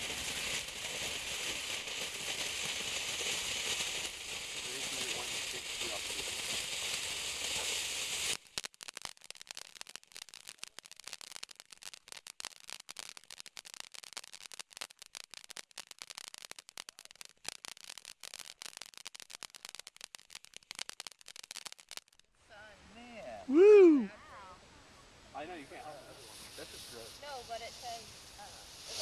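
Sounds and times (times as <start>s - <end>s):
firework hissing spray: 0.0s - 22.2s, 25.7s - 29.0s
firework crackling pops: 0.0s - 22.3s, 25.4s - 29.0s.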